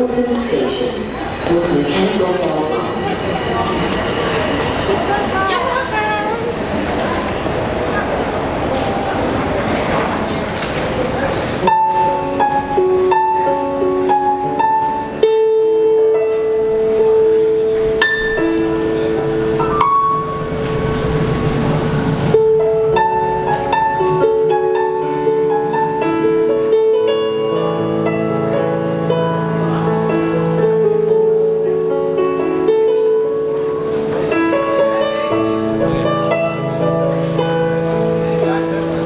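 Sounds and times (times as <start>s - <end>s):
piano melody: 0.0s - 39.0s
rushing noise: 0.8s - 12.9s, 16.8s - 25.0s.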